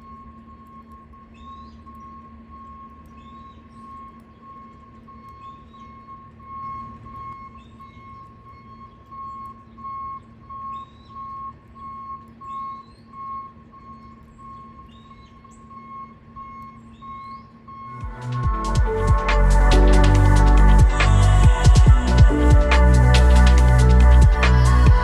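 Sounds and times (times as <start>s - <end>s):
low electronic drone: 0.0s - 25.0s
pulsing tone: 0.0s - 25.0s
loud electronic beat: 18.0s - 25.0s.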